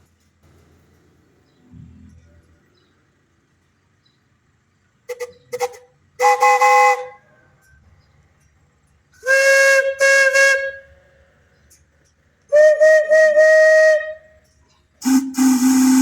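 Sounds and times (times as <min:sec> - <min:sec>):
steam whistle toots: 0:05.1 - 0:07.3, 0:09.2 - 0:10.9, 0:12.5 - 0:14.4, 0:15.0 - 0:16.0.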